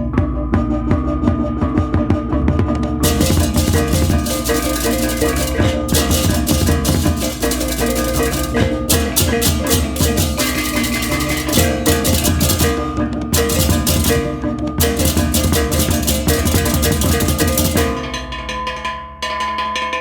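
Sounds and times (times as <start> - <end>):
clashing cymbals: 3.0 - 18.9
gongs ringing: 3.0 - 19.4
hand drums: 3.0 - 20.0.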